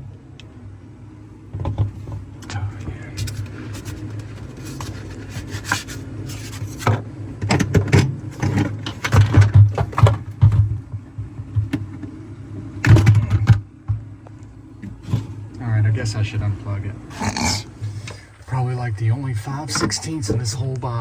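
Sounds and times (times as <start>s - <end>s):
steady low hum: 0.0s - 21.0s
plastic parts clattering and scraping: 3.2s - 10.8s.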